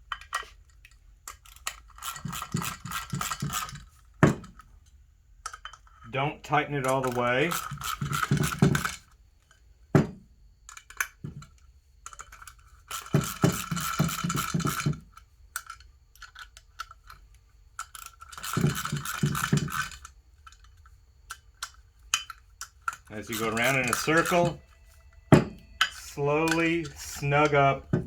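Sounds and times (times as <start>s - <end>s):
metal clinks: 22.1s - 28.0s.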